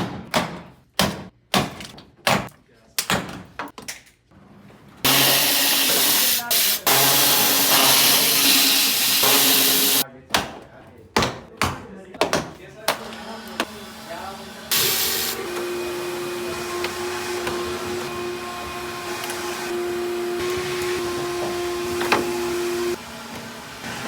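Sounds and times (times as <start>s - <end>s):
pressure washer motor hum: 5.1s - 10.0s, 13.6s - 24.0s
pressure washer water hiss: 5.1s - 10.0s, 14.2s - 15.5s.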